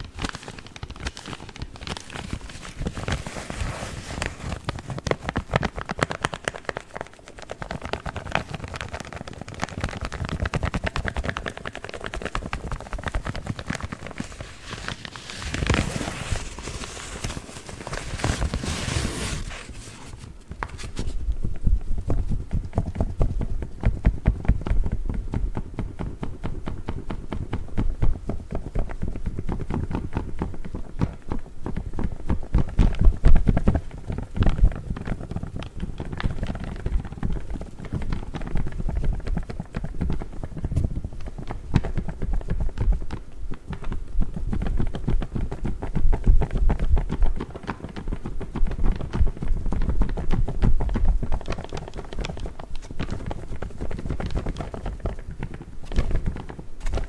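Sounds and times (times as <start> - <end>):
fingers tapping paper: 0.0 - 21.2, 22.0 - 57.0
paper filter bags crinkling: 0.0 - 21.2.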